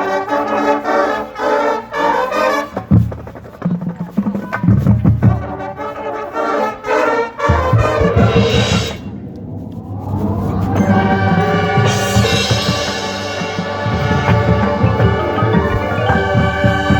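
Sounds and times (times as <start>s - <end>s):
brass playing punchy chords: 5.4s - 9.5s, 10.8s - 16.9s
heavy low drum hits: 7.5s - 16.9s.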